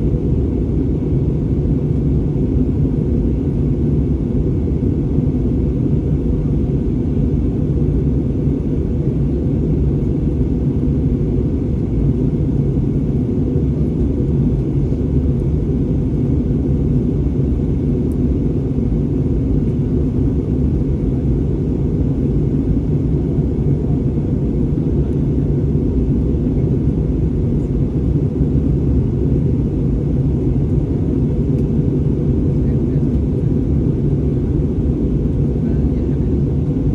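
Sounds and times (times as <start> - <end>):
airplane cabin engine rumble: 0.0 - 36.9.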